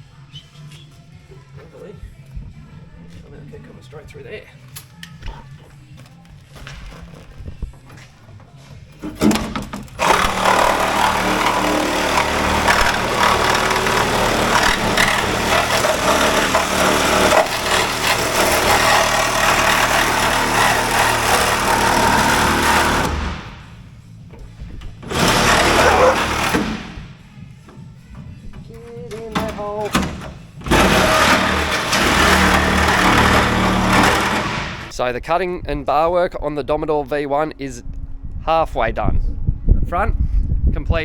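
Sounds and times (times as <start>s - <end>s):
angle grinder cutting sheet metal: 10.0s - 23.7s, 25.1s - 27.0s, 30.7s - 34.9s.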